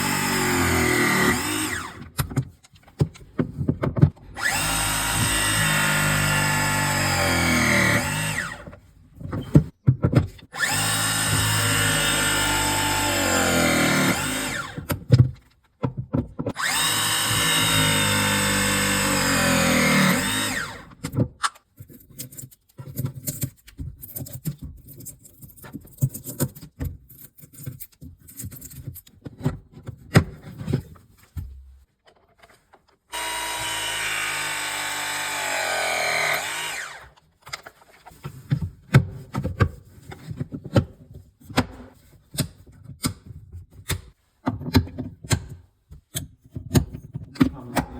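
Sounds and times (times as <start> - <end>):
power tool motor running: 0.0 - 2.0, 4.4 - 8.7, 10.6 - 14.9, 16.6 - 20.9, 33.1 - 37.1.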